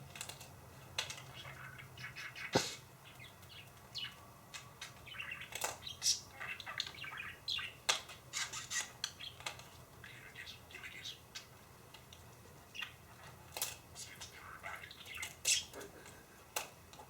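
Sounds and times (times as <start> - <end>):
budgie chirping and chattering: 5.1 - 9.4, 14.0 - 15.8.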